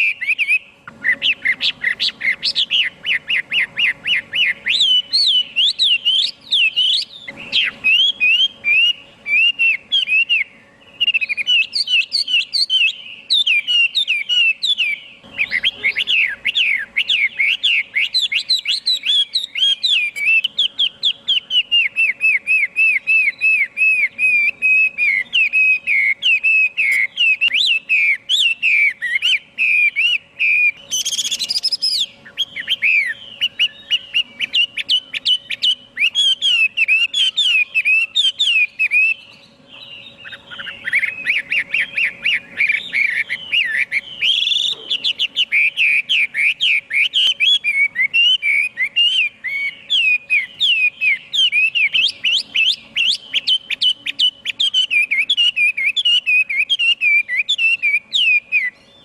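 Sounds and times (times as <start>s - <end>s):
bird singing whistled phrases: 0.0s - 59.0s.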